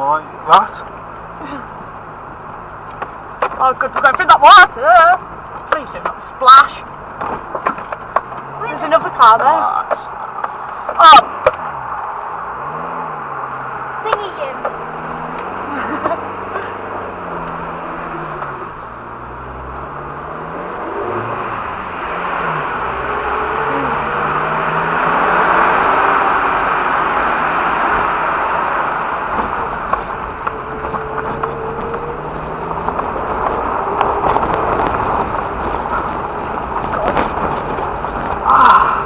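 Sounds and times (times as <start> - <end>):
engine revving: 7.4 - 39.0.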